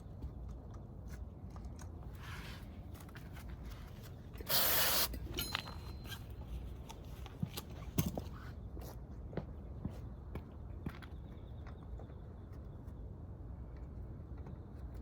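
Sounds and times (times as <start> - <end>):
loud hiss: 4.5 - 5.2
tools and metal parts clicking: 5.1 - 6.3.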